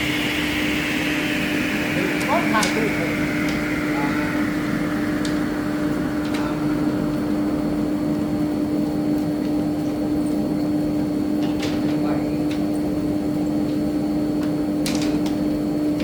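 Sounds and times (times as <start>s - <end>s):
machine motor humming: 0.0s - 10.0s
higher rushing sound: 0.0s - 10.2s.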